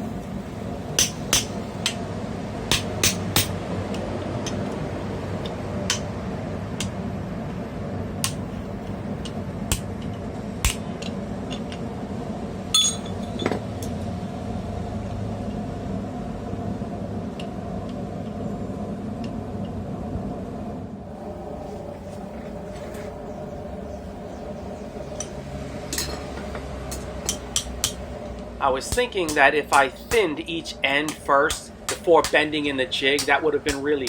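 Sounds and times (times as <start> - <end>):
low background hum: 0.0 - 34.0
hammer striking metal: 1.0 - 2.0, 2.7 - 3.6, 5.9 - 6.1, 12.8 - 13.6, 25.2 - 28.2, 28.8 - 34.0.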